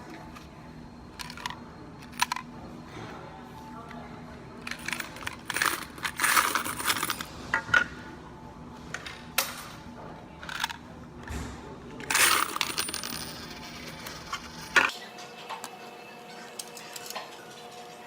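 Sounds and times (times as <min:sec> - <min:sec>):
coins clattering and jingling: 0:04.6 - 0:07.3, 0:12.0 - 0:14.9.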